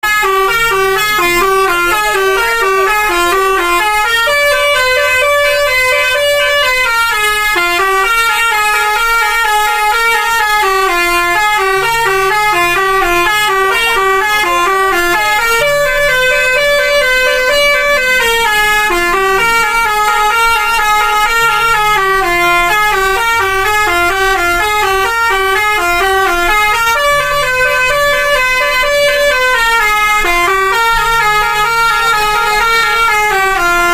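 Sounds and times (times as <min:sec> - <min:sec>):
bus horns playing a melody: 0:00.0 - 0:33.9.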